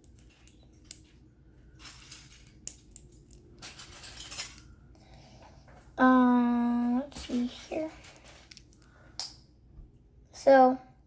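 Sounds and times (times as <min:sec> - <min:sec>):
plastic pieces clicking together: 0:01.8 - 0:04.7, 0:08.0 - 0:09.4.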